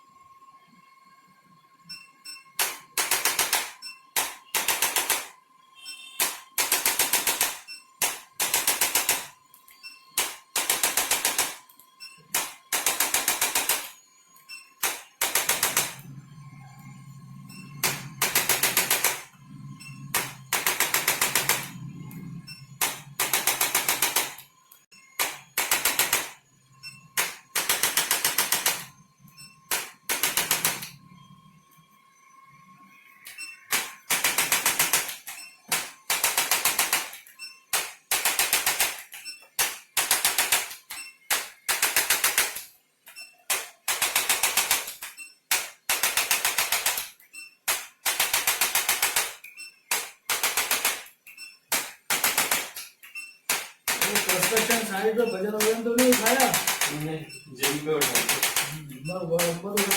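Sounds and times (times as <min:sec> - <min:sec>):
faint steady high tone: 0:05.6 - 0:06.2, 0:54.0 - 0:59.9
rapid mechanical taps: 0:17.8 - 0:19.3, 0:20.1 - 0:21.8, 0:22.7 - 0:24.4, 0:25.2 - 0:26.4, 0:33.7 - 0:59.9.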